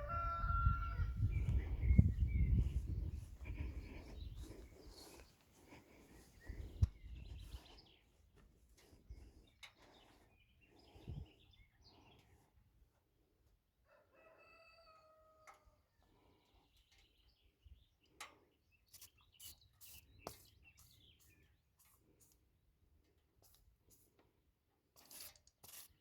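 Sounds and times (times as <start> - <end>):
rooster crowing: 0.0 - 1.4, 13.9 - 15.5.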